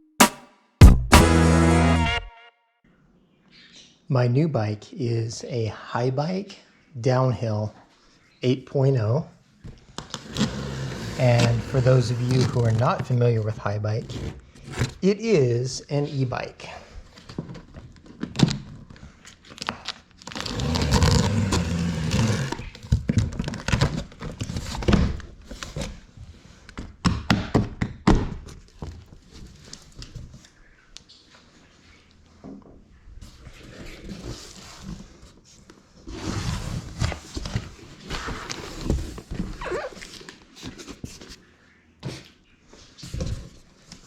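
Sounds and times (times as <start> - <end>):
packaging rustling and tearing: 19.5 - 24.7.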